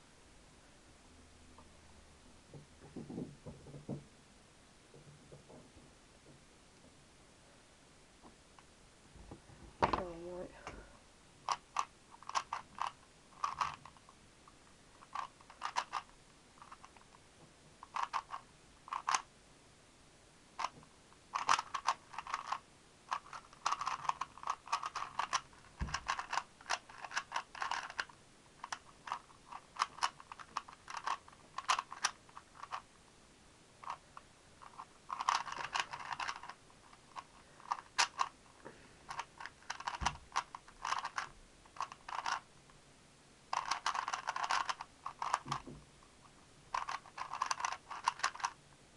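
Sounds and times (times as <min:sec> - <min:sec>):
puzzle cube clicking as turned: 0:11.5 - 0:14.1, 0:15.0 - 0:17.2, 0:17.8 - 0:19.3, 0:20.6 - 0:32.9, 0:33.8 - 0:38.3, 0:39.1 - 0:42.5, 0:43.5 - 0:45.7, 0:46.7 - 0:48.6.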